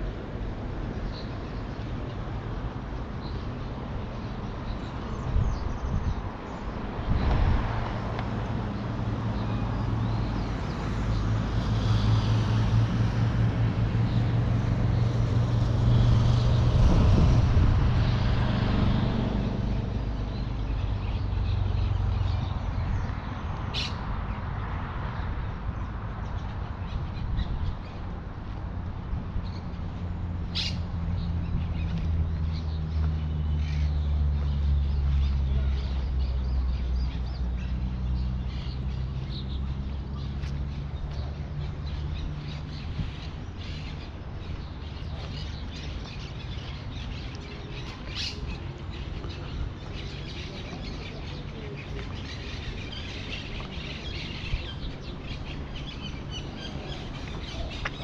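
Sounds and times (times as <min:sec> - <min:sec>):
traffic hum: 0:00.0 - 0:58.0
birds chirping and calling: 0:19.8 - 0:24.4, 0:30.4 - 0:58.0.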